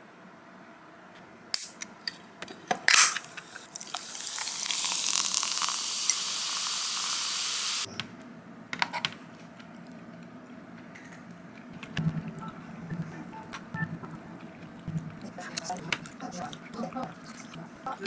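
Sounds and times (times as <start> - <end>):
steady hissing: 3.3 - 7.9.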